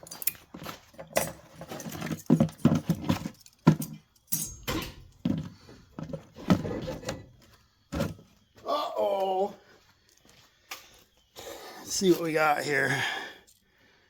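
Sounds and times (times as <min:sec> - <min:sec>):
metal parts and tools clinking: 0:00.0 - 0:05.5.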